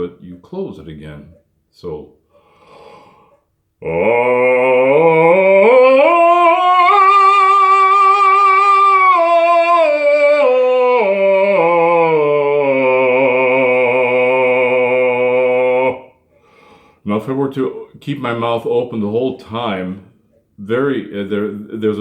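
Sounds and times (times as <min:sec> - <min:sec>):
bass voice singing a scale: 0:03.8 - 0:16.2.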